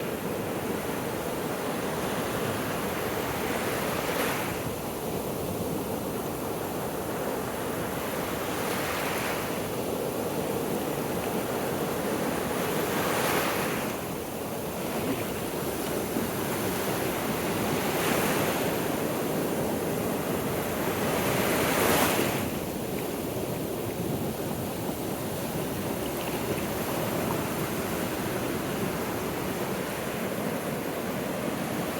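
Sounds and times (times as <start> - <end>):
wind on microphone: 0.0 - 31.9
surf washing onto beach: 7.3 - 31.9.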